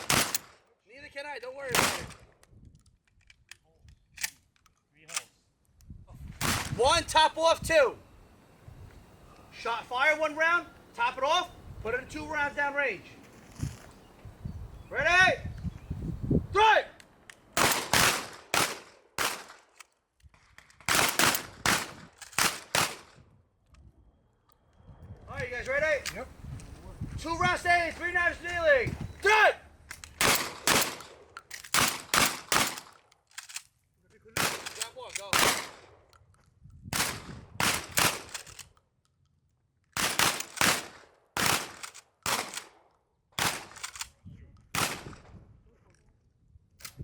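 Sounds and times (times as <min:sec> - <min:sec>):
shotgun blasts: 0:00.0 - 0:00.6, 0:01.7 - 0:02.2, 0:06.4 - 0:06.8, 0:17.6 - 0:19.7, 0:20.9 - 0:23.2, 0:30.1 - 0:33.0, 0:34.4 - 0:35.9, 0:36.9 - 0:38.4, 0:40.0 - 0:42.8, 0:43.4 - 0:43.8, 0:44.7 - 0:45.3.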